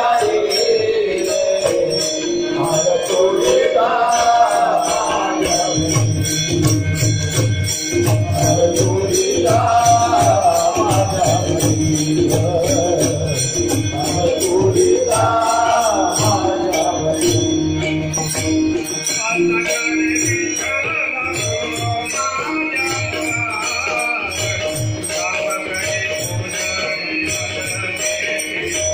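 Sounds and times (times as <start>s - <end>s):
group singing devotional melody: 0.0s - 18.4s
jingling metal percussion: 0.0s - 28.9s
steady drum beat: 2.6s - 18.2s.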